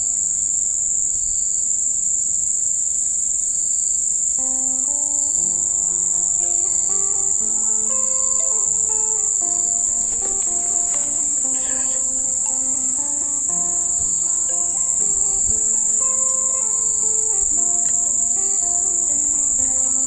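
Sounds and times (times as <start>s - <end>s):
high-pitched insect chorus: 0.0s - 20.0s
slow melodic background music: 4.4s - 20.0s.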